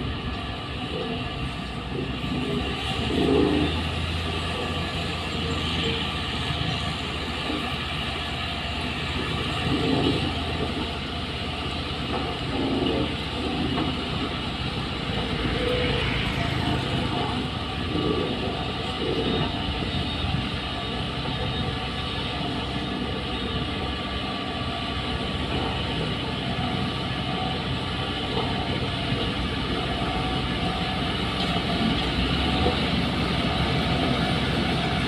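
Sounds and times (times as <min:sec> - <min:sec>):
heavy machinery engine running: 0:00.0 - 0:35.0.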